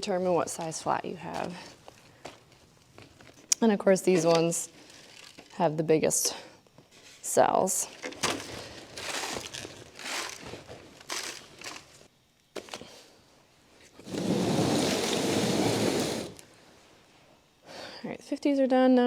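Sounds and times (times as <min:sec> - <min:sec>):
potting mix rustling: 0:07.7 - 0:12.1, 0:13.9 - 0:16.5
loose potting mix pouring: 0:14.0 - 0:16.4.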